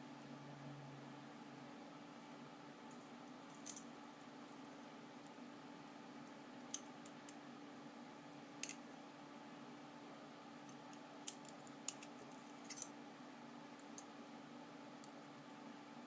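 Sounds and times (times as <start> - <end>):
faint steady hum: 0.0 - 16.0.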